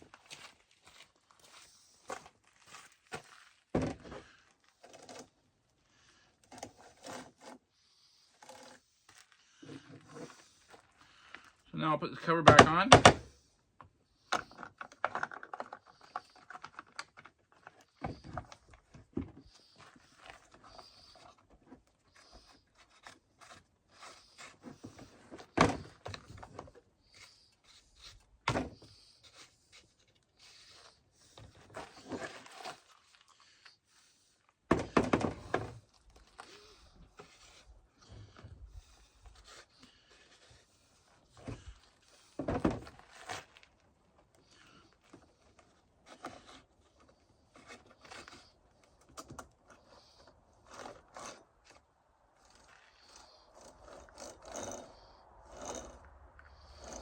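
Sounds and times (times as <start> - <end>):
chainsaw cover knocks and clunks: 3.7 - 4.2, 12.4 - 13.3, 34.7 - 35.8, 42.4 - 43.0.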